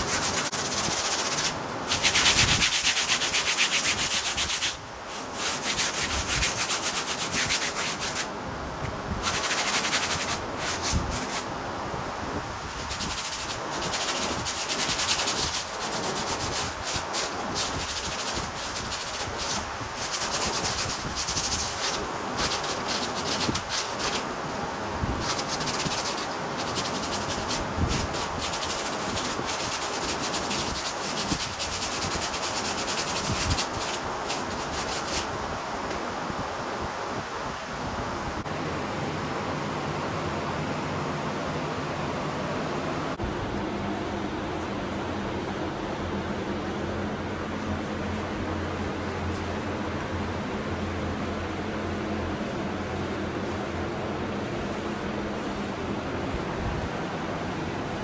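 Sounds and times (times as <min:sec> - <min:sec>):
scuff pad rubbing fiberglass: 0:00.0 - 0:11.5, 0:12.6 - 0:36.0.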